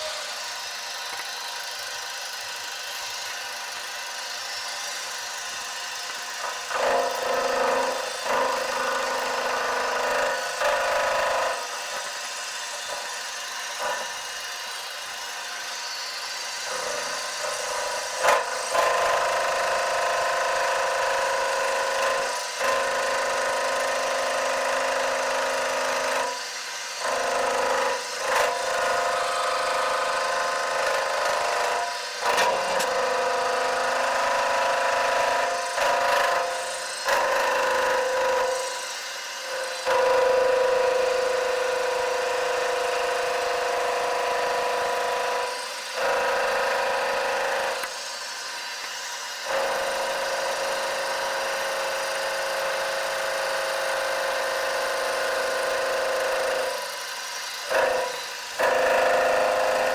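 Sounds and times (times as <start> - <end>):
metal lathe whining: 0.0 - 59.9.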